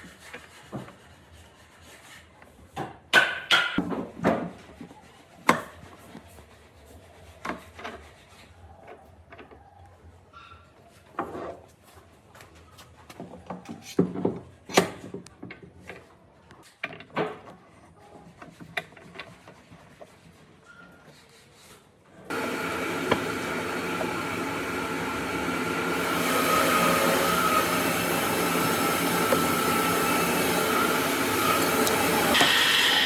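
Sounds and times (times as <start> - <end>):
wood scraping: 22.3 - 33.0.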